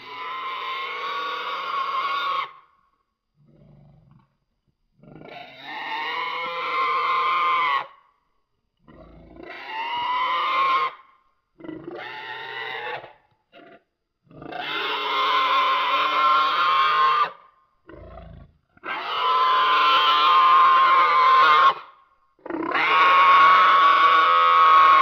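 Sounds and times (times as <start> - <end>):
harsh creature calls: 18.8 - 25.0.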